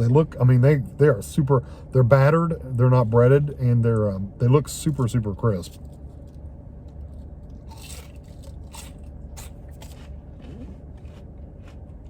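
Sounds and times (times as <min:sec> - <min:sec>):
steady low hum: 0:00.0 - 0:12.0
onion rings crunching: 0:05.8 - 0:12.0.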